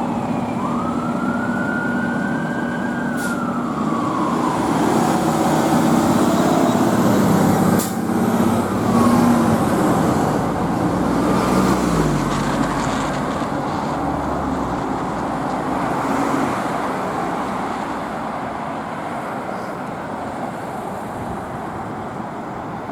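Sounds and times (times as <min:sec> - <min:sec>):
siren wailing: 0:00.0 - 0:07.7
emergency vehicle engines passing: 0:00.0 - 0:22.9.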